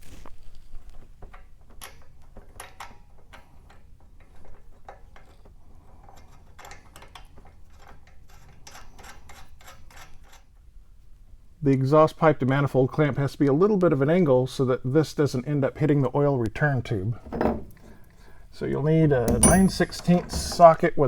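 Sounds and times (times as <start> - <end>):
light metallic clicks of bolts and nuts: 19.1 - 21.0.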